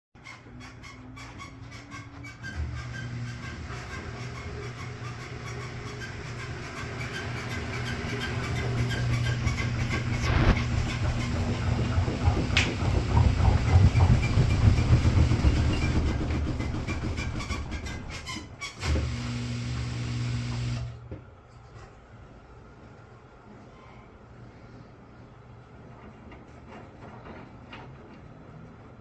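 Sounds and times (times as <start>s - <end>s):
washing machine rattling and knocking: 0.6s - 19.2s
washing machine motor hum: 1.4s - 18.2s, 18.8s - 21.2s.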